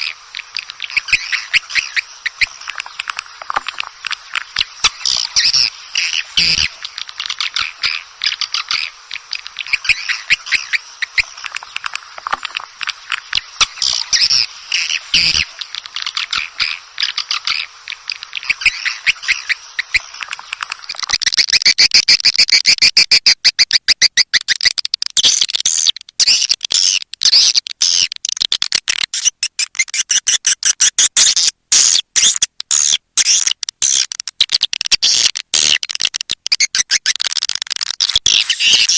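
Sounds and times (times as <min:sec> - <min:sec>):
swiftlets twittering: 0:32.2 - 0:38.9.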